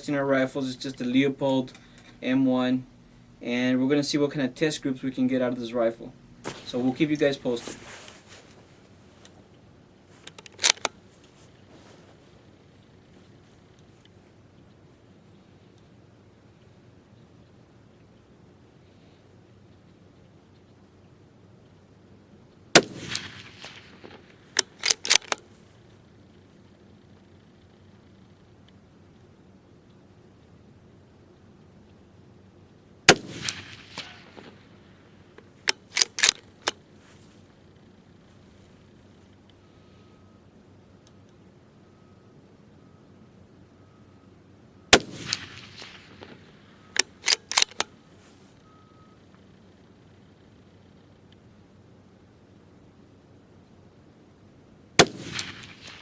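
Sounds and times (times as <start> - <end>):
rifle bolt clicks: 0.9 - 3.5, 10.2 - 11.0, 24.6 - 25.5, 33.1 - 34.5, 35.7 - 36.8, 45.0 - 47.9
rifle shot with echo: 22.8 - 25.4, 33.1 - 34.7, 44.9 - 47.8, 55.0 - 56.0.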